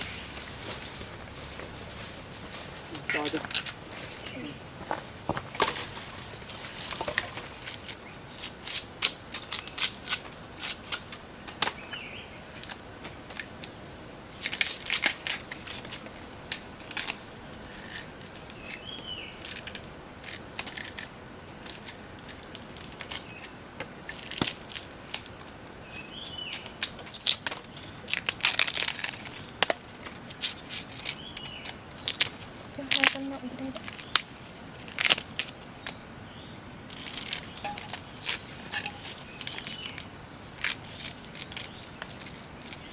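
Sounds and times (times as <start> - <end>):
plant material cracking: 24.1 - 36.0, 36.9 - 42.9.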